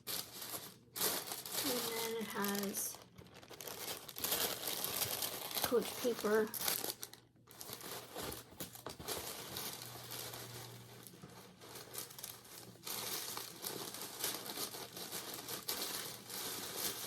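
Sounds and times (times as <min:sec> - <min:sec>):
wrapping paper rustling: 0:00.0 - 0:17.0.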